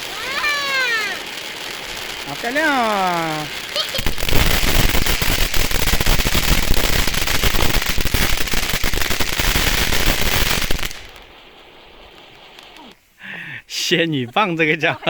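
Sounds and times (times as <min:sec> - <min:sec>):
firework crackling: 0:00.0 - 0:13.0.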